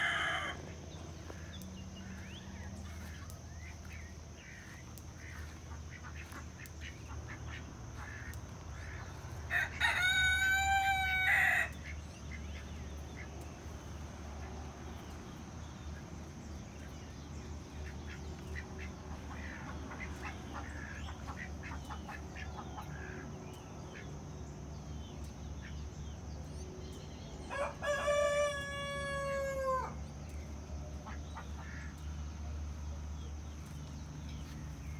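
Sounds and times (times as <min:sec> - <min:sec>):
rooster crowing: 0:00.0 - 0:00.8, 0:09.4 - 0:11.9, 0:27.4 - 0:30.0
hens clucking softly: 0:14.4 - 0:24.1.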